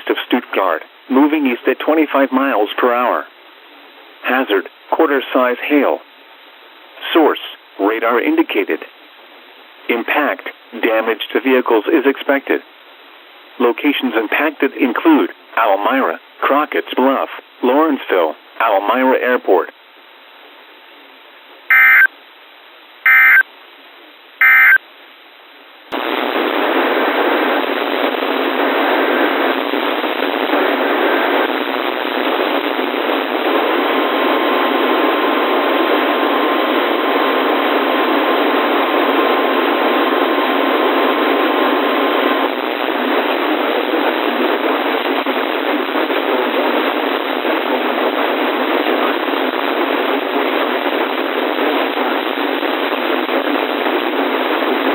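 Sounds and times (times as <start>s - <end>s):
loud radio static: 0.0s - 3.3s, 4.2s - 6.0s, 7.0s - 8.9s, 9.9s - 12.6s, 13.6s - 19.7s, 23.1s - 23.4s, 25.9s - 54.9s
radio data bursts: 21.7s - 22.1s, 23.1s - 23.4s, 24.4s - 24.8s
faint steady tone: 24.4s - 24.8s.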